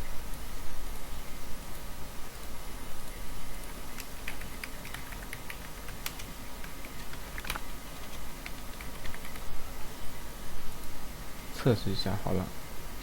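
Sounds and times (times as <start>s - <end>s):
steady low hum: 0.0s - 13.0s
keyboard typing: 3.9s - 9.5s.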